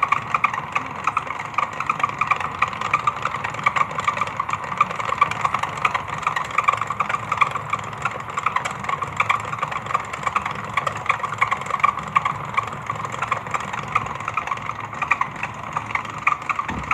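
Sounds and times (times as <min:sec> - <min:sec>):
clothes dryer humming: 0:00.0 - 0:16.9.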